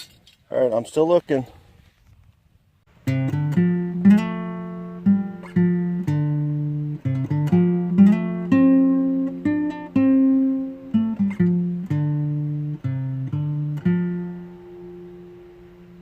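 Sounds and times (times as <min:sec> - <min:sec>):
acoustic guitar picking melody: 0:02.9 - 0:16.0.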